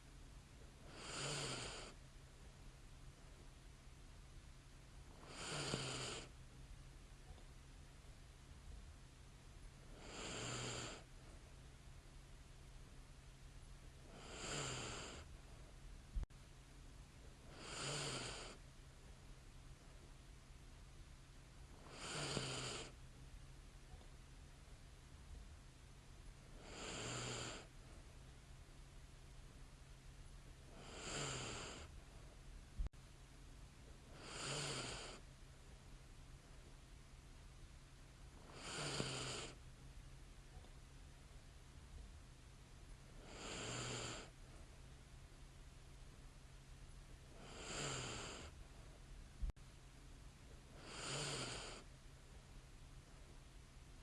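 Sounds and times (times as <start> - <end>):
steady low hum: 0.0 - 22.0, 22.9 - 38.7, 39.4 - 50.9
woman snoring softly: 0.8 - 2.0, 5.1 - 6.4, 9.9 - 11.1, 14.0 - 15.3, 17.4 - 18.6, 21.8 - 23.0, 26.5 - 27.7, 30.7 - 31.9, 34.1 - 35.2, 38.4 - 39.6, 43.2 - 44.4, 47.3 - 48.6, 50.7 - 51.9.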